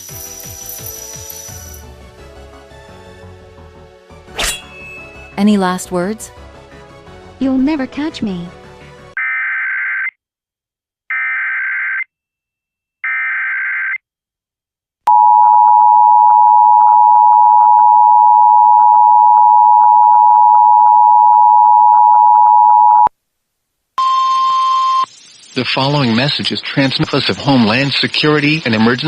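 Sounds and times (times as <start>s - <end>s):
two-tone attention signal: 24.0s - 25.1s
data burst tones: 24.0s - 26.4s.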